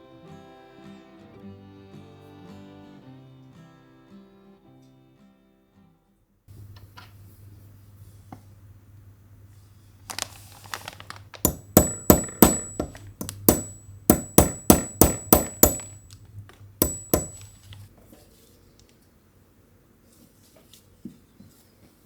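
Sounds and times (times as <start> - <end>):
faint high metallic ring: 16.8 - 17.8.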